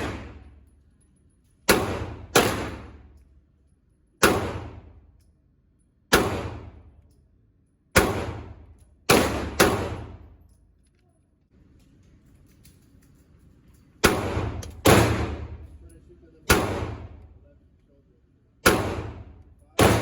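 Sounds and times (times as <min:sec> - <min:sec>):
gunshots: 0:00.0 - 0:00.4, 0:01.7 - 0:03.0, 0:04.2 - 0:04.9, 0:06.1 - 0:06.8, 0:08.0 - 0:10.2, 0:14.0 - 0:15.6, 0:16.5 - 0:17.2, 0:18.6 - 0:20.0.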